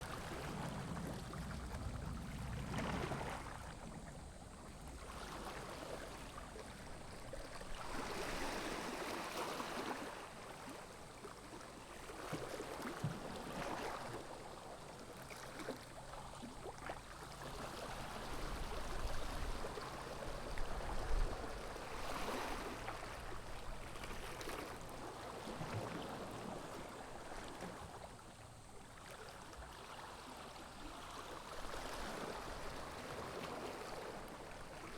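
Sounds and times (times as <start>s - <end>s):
small sea waves lapping: 0.0s - 34.9s.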